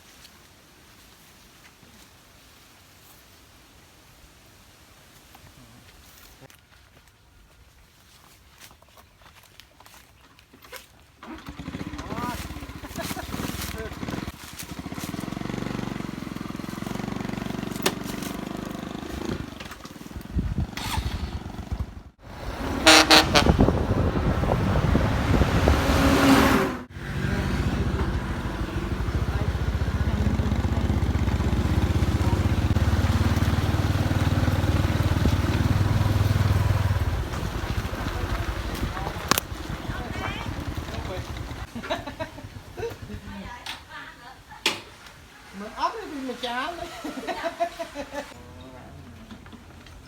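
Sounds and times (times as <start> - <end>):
small engine running: 11.2 - 23.5, 24.4 - 42.6.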